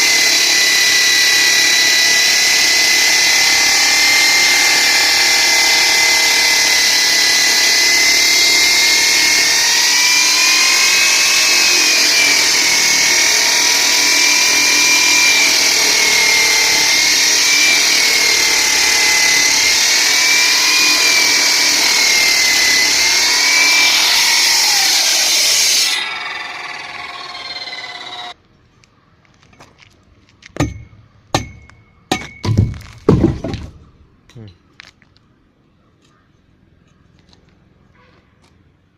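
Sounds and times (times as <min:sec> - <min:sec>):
blade winding down: 0:00.0 - 0:28.4
power cutter cutting concrete: 0:00.0 - 0:28.4.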